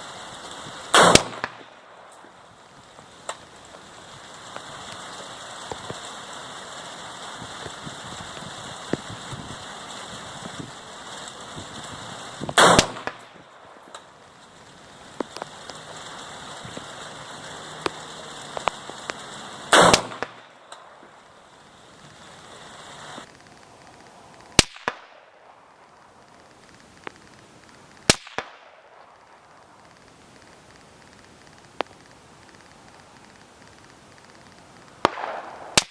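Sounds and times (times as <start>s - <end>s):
rain pattering: 0.0s - 35.9s
rifle shots: 0.8s - 2.4s, 12.4s - 14.1s, 19.6s - 21.1s, 24.6s - 25.7s, 28.1s - 29.2s, 35.0s - 35.9s.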